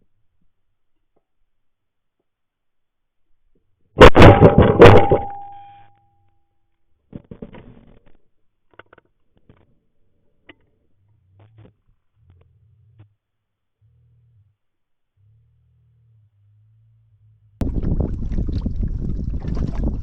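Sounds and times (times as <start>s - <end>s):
shotgun blasts: 4.0s - 5.6s
ringing tone: 4.2s - 6.3s.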